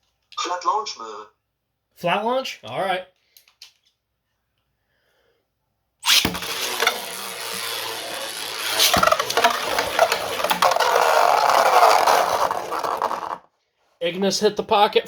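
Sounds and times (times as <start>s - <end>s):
spinning tops colliding: 6.0s - 13.4s
spinning tops scraping and clicking: 6.0s - 13.4s.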